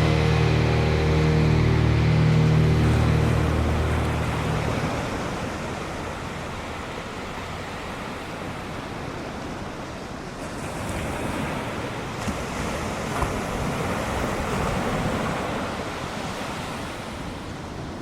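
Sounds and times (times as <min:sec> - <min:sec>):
waves breaking: 0:00.0 - 0:18.0.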